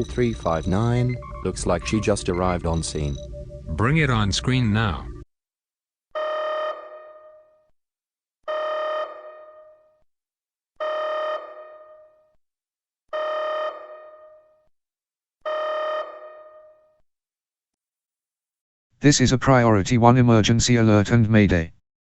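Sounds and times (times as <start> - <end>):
electronic alert tone: 0.0 - 5.2.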